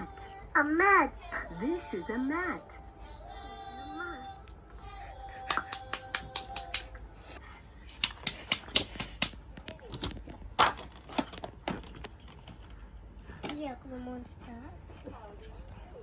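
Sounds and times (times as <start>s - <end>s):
sharp clicks and taps: 5.5s - 7.0s, 7.9s - 9.4s.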